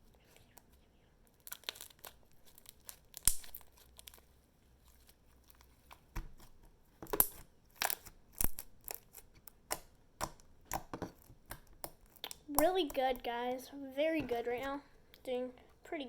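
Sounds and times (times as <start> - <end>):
slime popping and crackling: 1.3 - 4.3, 5.0 - 13.4.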